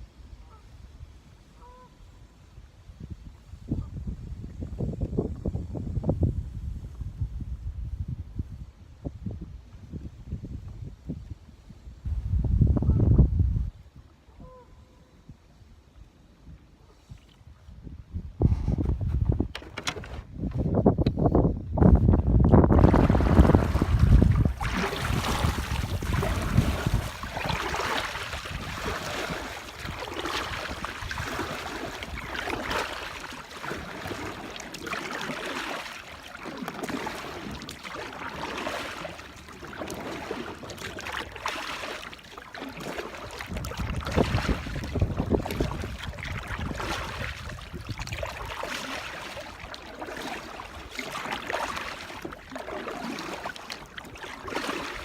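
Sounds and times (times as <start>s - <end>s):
wind gusting over microphone: 2.9s - 13.9s, 17.6s - 34.4s, 43.2s - 48.8s
water splashing against boat hull: 18.4s - 21.4s, 22.0s - 55.0s.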